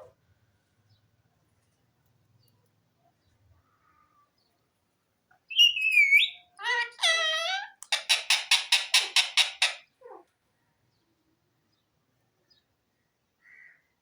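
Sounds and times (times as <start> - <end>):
parakeet calling: 5.5 - 9.9.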